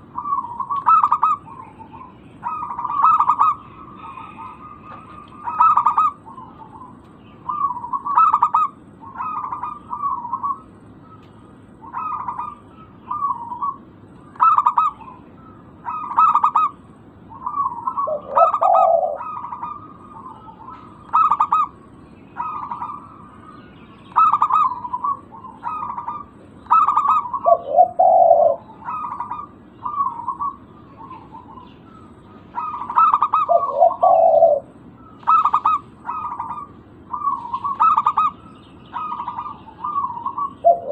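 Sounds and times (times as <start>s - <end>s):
doves cooing: 0.0s - 40.9s
deeper cooing notes: 17.4s - 21.7s, 32.6s - 38.4s.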